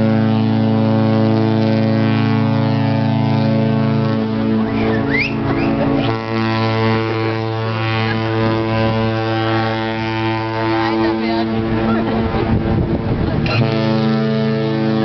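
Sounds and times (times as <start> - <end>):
deep ship horn blasts: 0.0 - 15.0.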